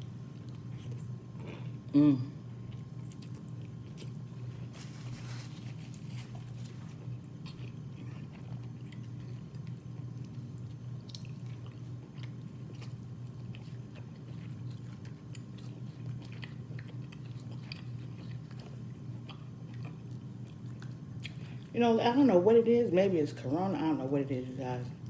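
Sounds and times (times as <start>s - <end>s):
steady low hum: 0.0s - 25.0s
person chewing: 0.3s - 21.7s.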